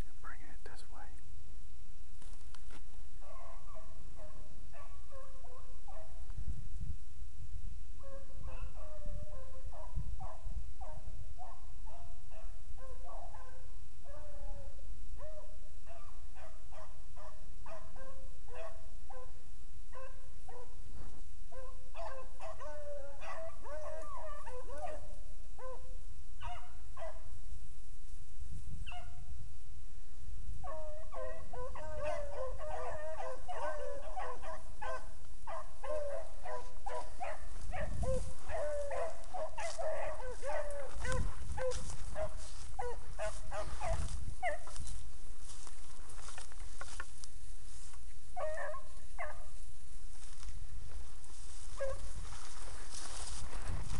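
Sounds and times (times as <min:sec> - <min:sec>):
hounds baying: 0:03.2 - 0:06.2, 0:08.0 - 0:27.2, 0:30.6 - 0:47.0, 0:48.4 - 0:49.6, 0:51.3 - 0:53.4.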